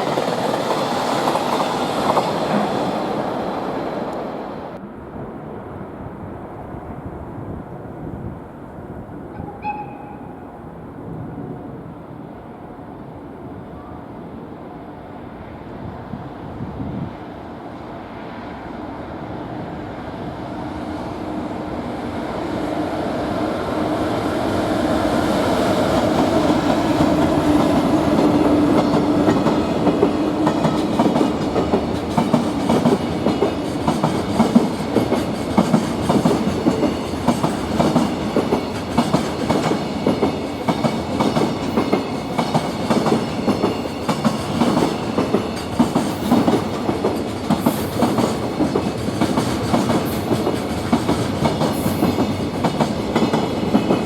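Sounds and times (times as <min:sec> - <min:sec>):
locomotive humming: 0:11.8 - 0:54.0
train wheels clicking over rail joints: 0:25.3 - 0:54.0.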